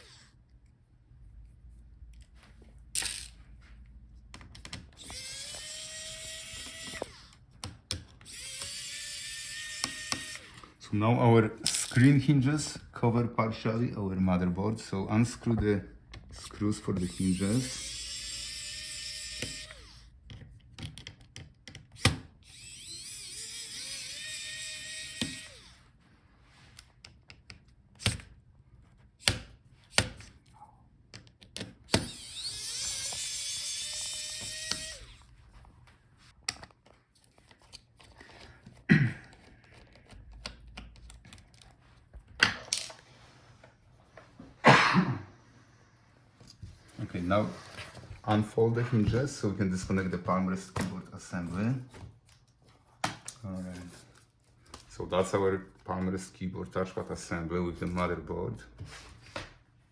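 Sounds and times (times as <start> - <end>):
screws and parts clicking: 4.4 - 10.8, 16.1 - 25.8, 31.1 - 35.3
electric screwdriver whirring: 5.0 - 7.4, 8.2 - 10.8, 16.4 - 20.1, 22.0 - 25.8, 31.9 - 35.3.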